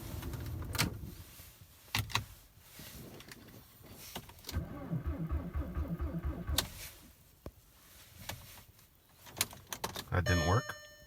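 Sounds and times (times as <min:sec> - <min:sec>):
diesel engine cranking: 0:04.5 - 0:06.7.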